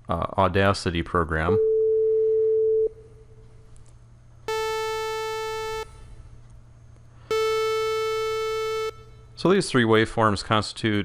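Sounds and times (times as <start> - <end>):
pure sine tone: 4.5 - 6.2, 7.3 - 9.4
buzzy sawtooth tone: 7.3 - 9.3.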